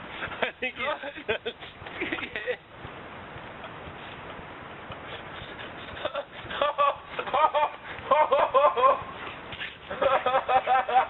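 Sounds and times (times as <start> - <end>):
steady hiss: 0.0 - 11.0
high-pitched laughter: 5.4 - 9.1, 9.8 - 11.0.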